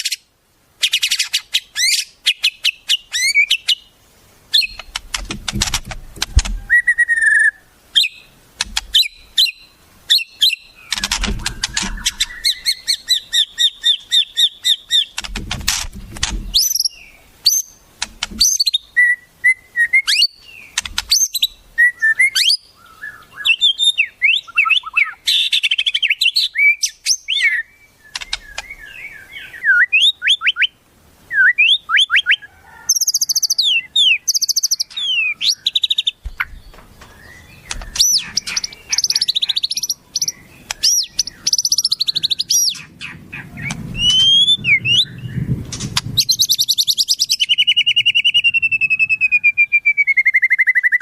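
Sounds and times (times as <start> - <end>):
songbird calls: 0.0 - 51.0
descending bird trill: 4.6 - 15.3, 33.0 - 51.0.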